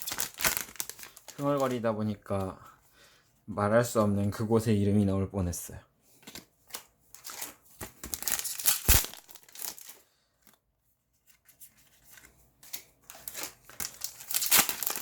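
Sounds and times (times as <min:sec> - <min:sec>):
foil wrapper tearing and crinkling: 0:00.0 - 0:01.8, 0:07.2 - 0:10.0, 0:12.7 - 0:15.0.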